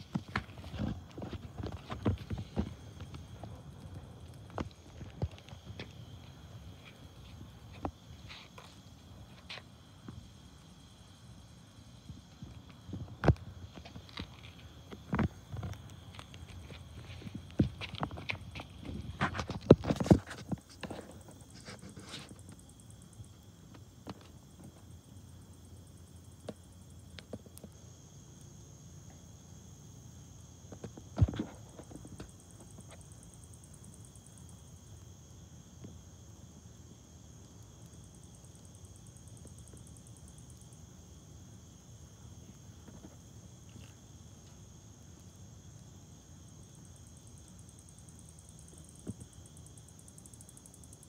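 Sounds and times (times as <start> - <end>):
fire popping: 0.0 - 10.8
campfire burning: 0.0 - 28.6
night insects chirring: 0.0 - 51.0.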